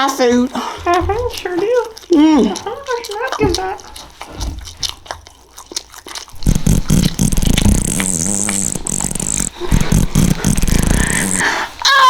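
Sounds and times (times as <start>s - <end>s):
long sputtering fart: 6.3s - 12.0s.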